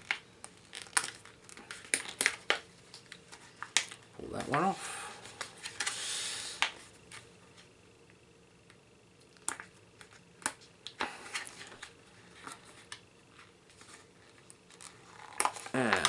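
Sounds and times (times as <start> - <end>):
plastic pouch crinkling: 0.0 - 4.0, 14.6 - 16.0.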